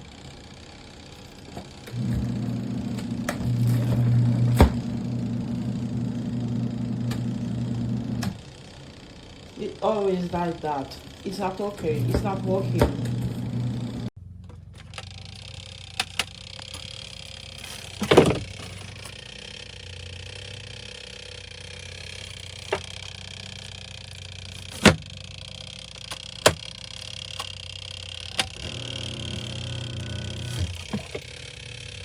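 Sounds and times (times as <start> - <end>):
washing machine motor humming: 0.0 - 32.0
sharp clicks and knocks: 22.0 - 28.8.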